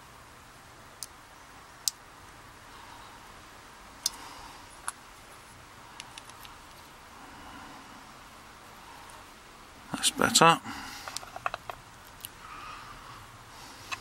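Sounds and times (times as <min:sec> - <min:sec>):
small metal clicks and taps: 0:11.0 - 0:12.3.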